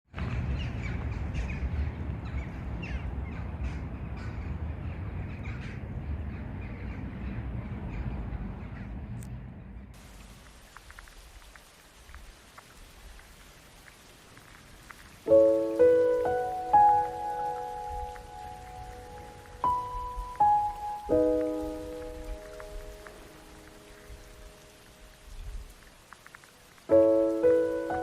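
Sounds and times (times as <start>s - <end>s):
light patter of ticks: 10.0s - 28.0s
small birds chirping: 13.8s - 28.0s.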